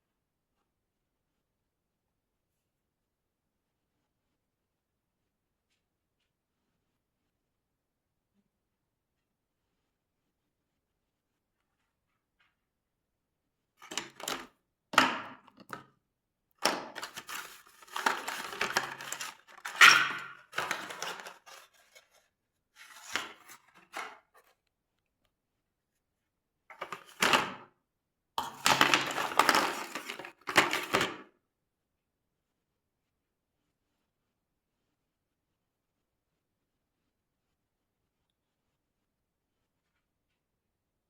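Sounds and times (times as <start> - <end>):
handling noise clicks and clatter: 16.6 - 22.1, 28.4 - 31.2.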